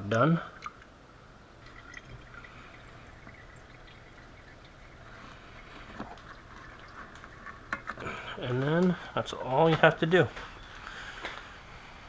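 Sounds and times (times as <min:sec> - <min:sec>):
oil pouring into drain pan: 0:01.6 - 0:08.2.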